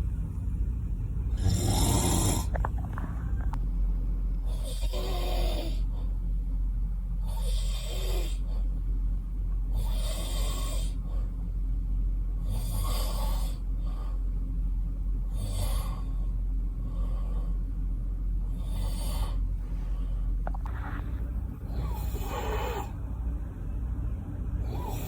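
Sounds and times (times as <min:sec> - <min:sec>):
steady low hum: 0:00.0 - 0:25.0
man snoring: 0:01.3 - 0:03.6, 0:04.5 - 0:05.9, 0:07.3 - 0:08.4, 0:09.8 - 0:11.0, 0:12.4 - 0:13.6, 0:15.3 - 0:16.1, 0:18.6 - 0:19.4, 0:20.4 - 0:23.0, 0:24.7 - 0:25.0.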